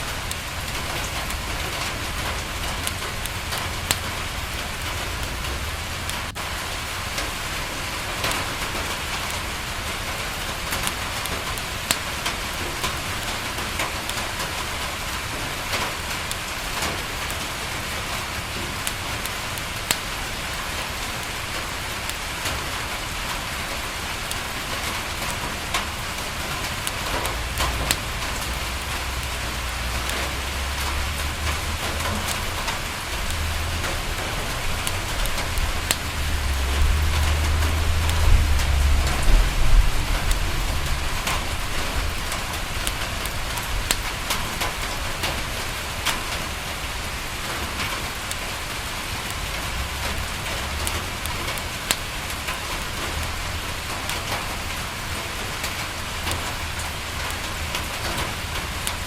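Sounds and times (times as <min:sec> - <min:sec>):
rain on a window: 0:00.0 - 0:59.0
distant thunder rumble: 0:27.2 - 0:45.0.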